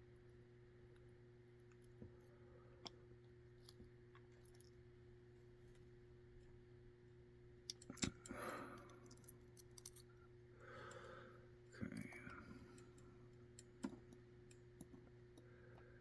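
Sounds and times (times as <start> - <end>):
faint steady hum: 0.0 - 16.0
small metal clicks of lock parts: 7.6 - 10.2, 11.9 - 15.8.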